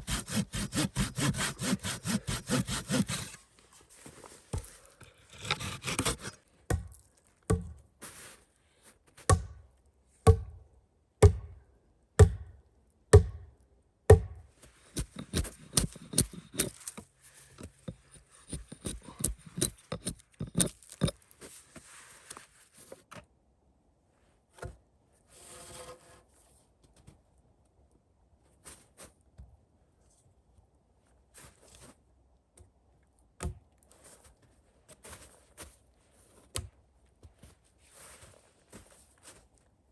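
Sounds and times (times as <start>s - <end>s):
wood handling sounds: 4.0s - 6.4s, 14.9s - 21.9s
wood being chopped: 5.5s - 7.7s, 9.3s - 9.6s, 14.1s - 14.4s.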